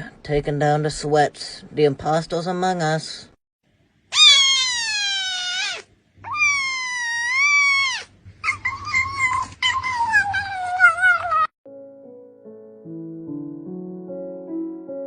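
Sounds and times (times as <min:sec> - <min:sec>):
cat meowing: 0:04.1 - 0:11.5.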